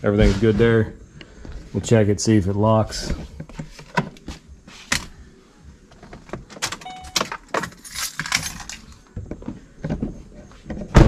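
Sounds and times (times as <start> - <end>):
short tone: 6.8 - 7.2.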